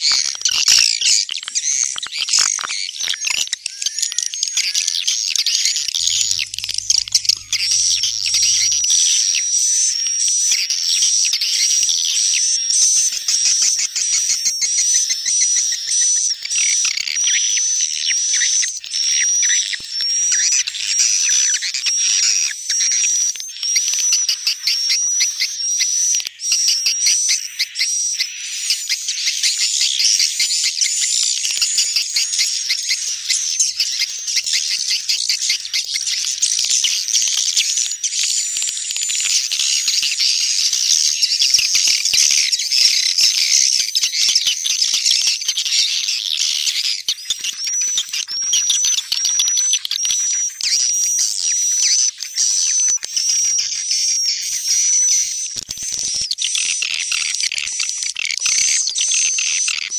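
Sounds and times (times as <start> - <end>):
swiftlet chirps chatter: 4.0 - 9.9, 27.3 - 56.6.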